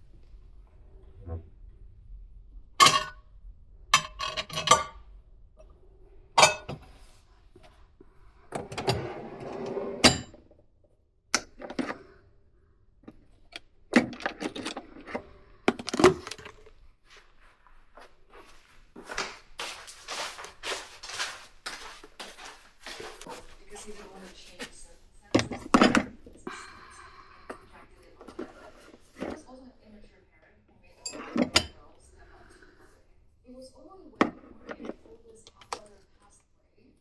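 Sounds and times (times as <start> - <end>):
dishes and utensils clinking: 2.8 - 3.2, 4.0 - 5.0, 6.4 - 6.9, 31.0 - 31.8
rustling handling sounds: 15.8 - 26.4.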